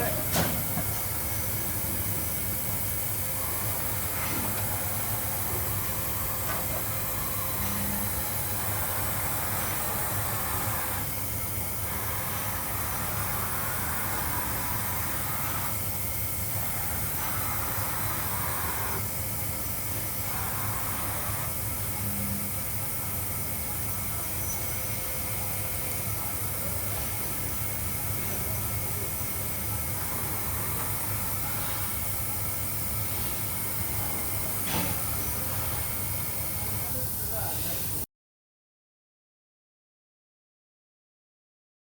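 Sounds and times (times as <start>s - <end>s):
milling machine hum with hiss: 0.0s - 38.0s.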